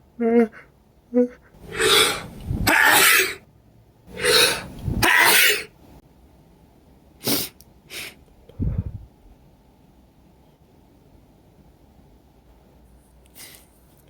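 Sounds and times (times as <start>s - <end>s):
sharp breath: 1.7s - 2.4s, 4.1s - 4.8s
man sneezing: 4.2s - 5.7s
sniffs: 7.2s - 8.2s, 13.3s - 13.8s
low puff of breath: 7.2s - 9.1s.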